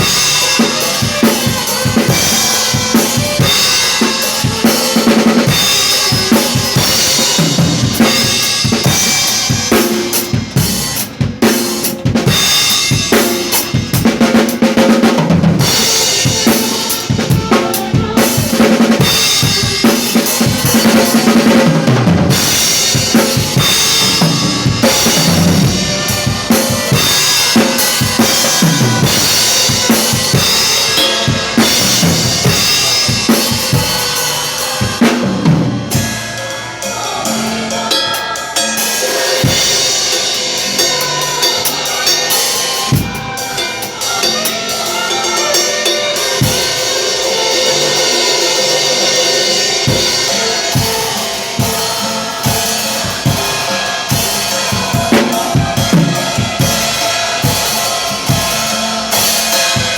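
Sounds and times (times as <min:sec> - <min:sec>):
drum kit playing: 0:00.0 - 0:59.9
recorded gospel worship song: 0:00.0 - 0:59.9.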